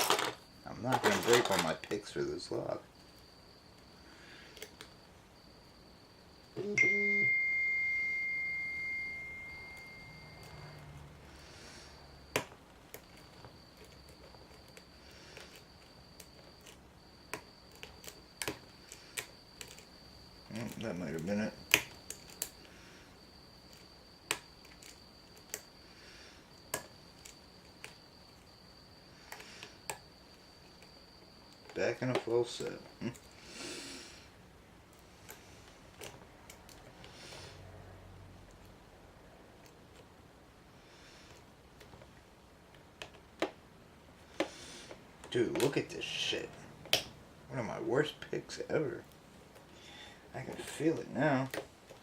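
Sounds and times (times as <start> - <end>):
bright chime ringing: 6.6 - 10.8
phone buzz: 6.6 - 12.0.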